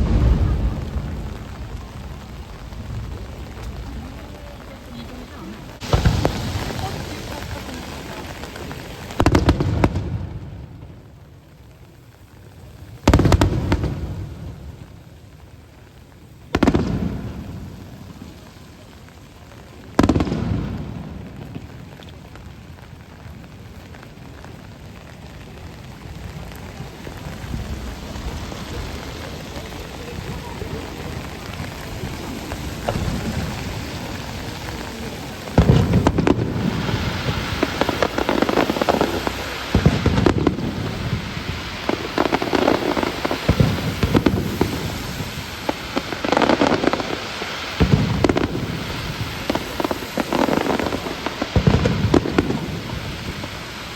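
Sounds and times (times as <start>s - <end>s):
steady rain: 0.0s - 53.9s
firework shells booming: 5.8s - 10.6s, 32.8s - 53.7s.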